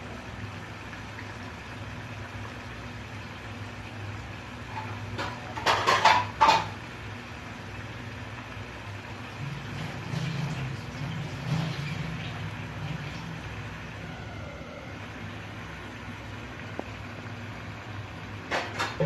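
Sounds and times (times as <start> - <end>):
metal pot lid clatter: 5.2 - 6.7.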